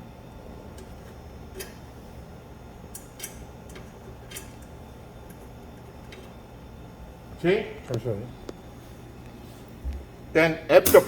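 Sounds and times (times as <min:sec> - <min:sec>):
steady low hum: 0:00.0 - 0:11.0
sharp clicks of wire connections: 0:02.9 - 0:04.7.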